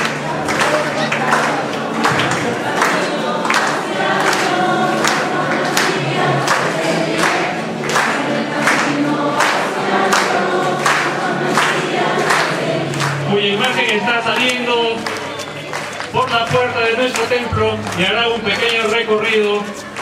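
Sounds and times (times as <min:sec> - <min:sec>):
group singing a hymn: 0:00.0 - 0:15.7.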